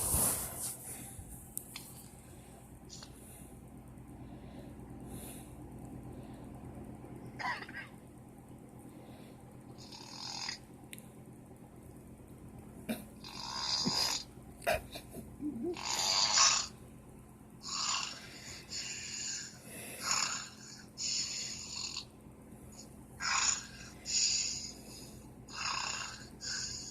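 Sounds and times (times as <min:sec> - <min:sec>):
man snoring: 0:09.8 - 0:10.6, 0:13.2 - 0:14.3, 0:15.5 - 0:16.7, 0:17.6 - 0:22.1, 0:23.2 - 0:26.9.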